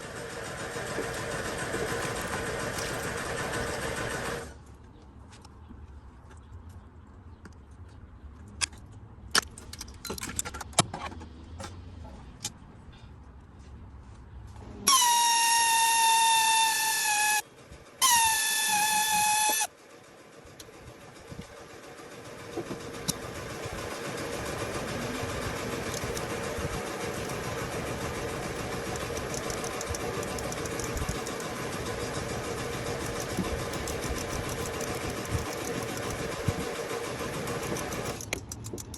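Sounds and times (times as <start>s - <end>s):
faint steady running sound: 0.0s - 4.6s, 19.5s - 38.9s
sharp clicks and knocks: 25.4s - 38.9s.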